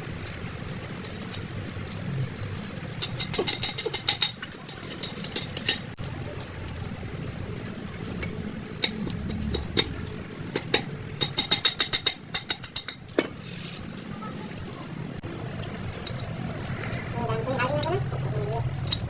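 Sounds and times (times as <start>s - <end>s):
metal tools clinking: 3.0s - 6.0s.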